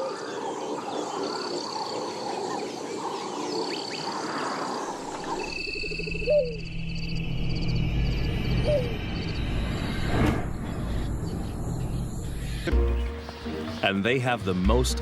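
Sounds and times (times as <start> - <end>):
frogs croaking: 0.0 - 13.9
low steady music: 12.4 - 15.0.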